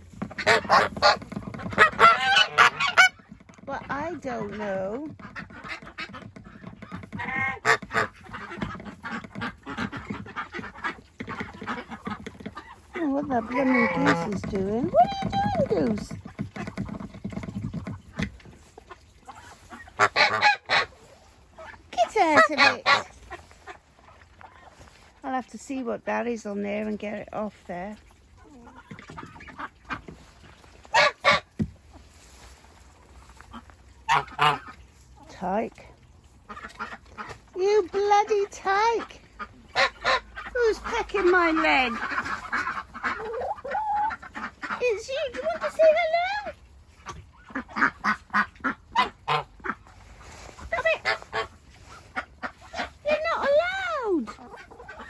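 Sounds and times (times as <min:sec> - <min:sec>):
ducks quacking: 0:00.0 - 0:17.0, 0:17.7 - 0:25.0, 0:28.4 - 0:31.6, 0:33.0 - 0:55.0
goose honk: 0:00.3 - 0:03.3, 0:07.0 - 0:16.1, 0:18.9 - 0:21.0, 0:21.6 - 0:23.8, 0:30.9 - 0:31.5, 0:33.5 - 0:34.8, 0:38.1 - 0:55.0.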